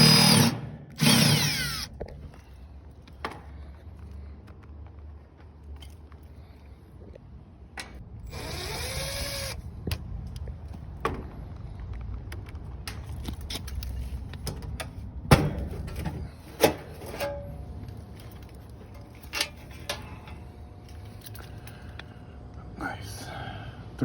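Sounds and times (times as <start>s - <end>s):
cordless drill whining: 0.0s - 1.9s, 8.3s - 9.6s.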